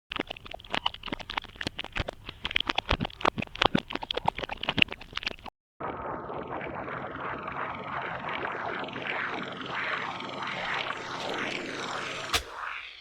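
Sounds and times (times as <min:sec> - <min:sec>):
whirring hiss with falling sweeps: 0:06.9 - 0:13.0.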